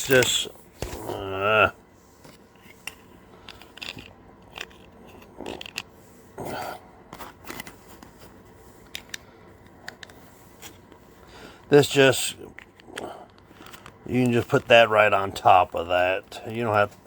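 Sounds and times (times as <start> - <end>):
plastic parts clicking and scraping: 2.2 - 6.0, 7.1 - 11.1, 12.4 - 17.0.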